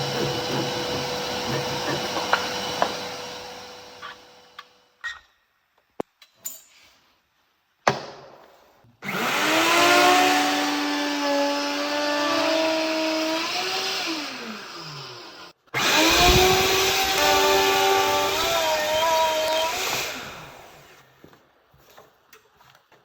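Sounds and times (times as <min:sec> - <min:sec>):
electric power tool whining: 0:00.0 - 0:04.8, 0:09.0 - 0:21.0.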